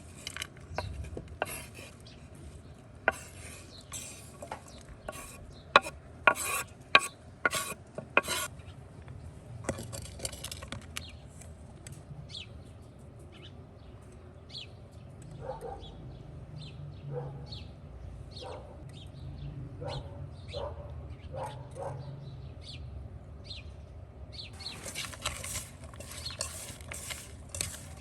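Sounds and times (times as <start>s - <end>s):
utensils scraping: 0.0s - 2.0s, 3.1s - 8.5s, 24.6s - 28.0s.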